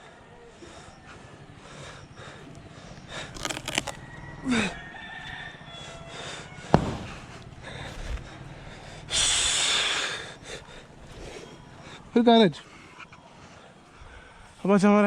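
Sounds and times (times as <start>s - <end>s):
sharp crack: 3.1s - 4.0s, 6.6s - 7.5s
rooster crowing: 3.8s - 8.8s
knocks: 6.7s - 7.2s.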